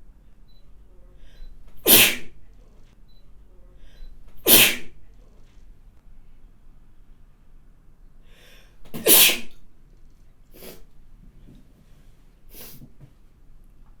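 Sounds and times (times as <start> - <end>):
short inhale: 1.2 - 2.3, 3.8 - 4.9, 8.2 - 8.8
woman sneezing: 1.8 - 2.4, 4.4 - 5.0, 9.0 - 9.6
bursts of breath: 8.2 - 9.5.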